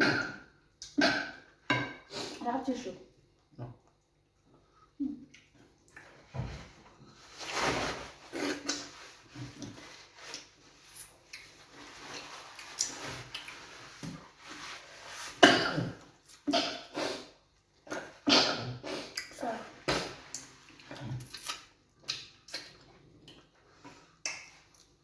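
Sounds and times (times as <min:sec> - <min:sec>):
chewing and smacking mouth noises: 0:20.3 - 0:25.0.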